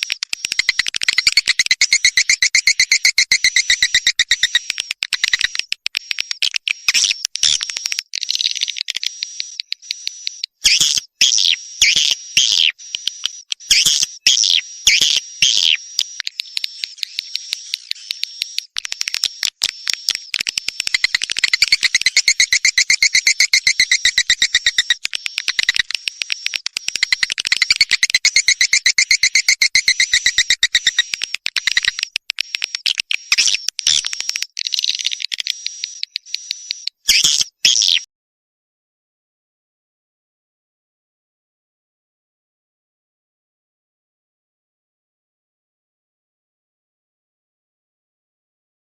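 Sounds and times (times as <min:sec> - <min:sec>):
rapid high bird chirps and clicks: 0:00.0 - 0:38.1.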